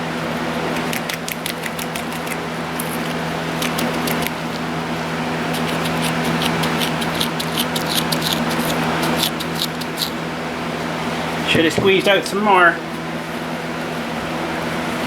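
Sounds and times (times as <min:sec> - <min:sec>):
steady low hum: 0:00.0 - 0:15.0
grease squishing clicks: 0:00.7 - 0:04.6, 0:05.5 - 0:10.2.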